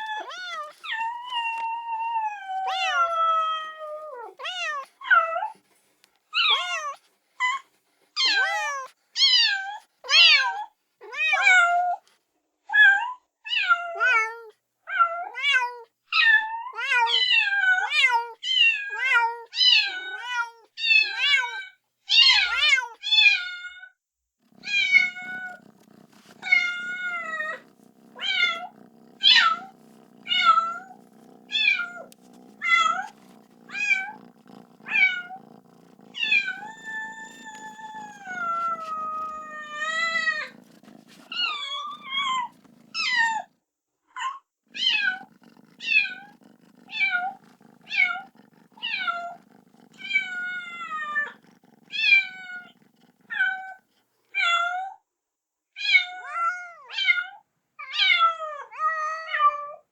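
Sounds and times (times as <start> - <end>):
kitten meowing: 0.0 - 5.5, 24.6 - 43.5, 44.8 - 53.8.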